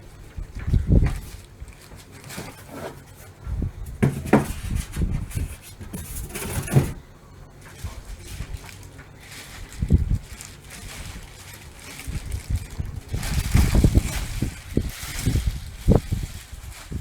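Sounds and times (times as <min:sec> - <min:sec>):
packaging rustling: 0:00.2 - 0:17.0
knocks and thumps on a box: 0:04.0 - 0:04.7.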